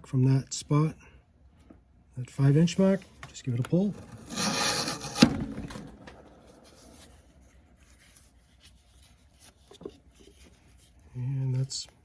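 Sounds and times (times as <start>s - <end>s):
blade scraping leather strap: 3.8s - 5.4s.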